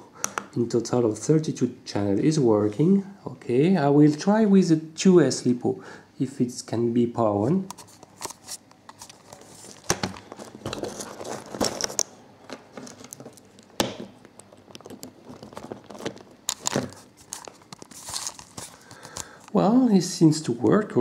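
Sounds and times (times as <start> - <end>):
rustling: 14.4 - 19.4.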